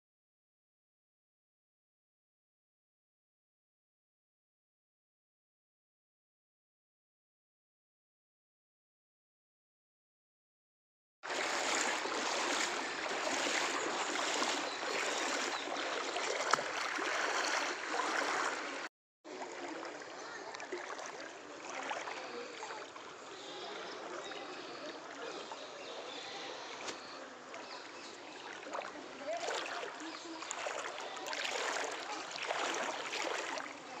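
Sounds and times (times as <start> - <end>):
floodwater rushing: 11.3 - 25.5, 26.2 - 34.0.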